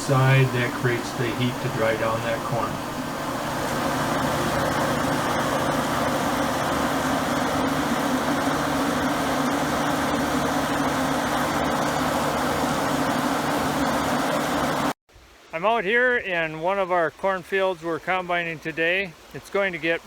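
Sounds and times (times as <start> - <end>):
grain dryer fan and burner drone: 0.0 - 15.0.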